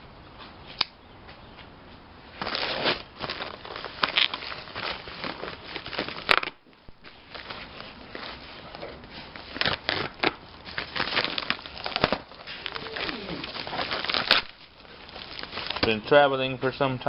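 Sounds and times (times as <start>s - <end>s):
packaging ripping: 2.4s - 16.0s
packaging crinkling: 2.4s - 16.1s.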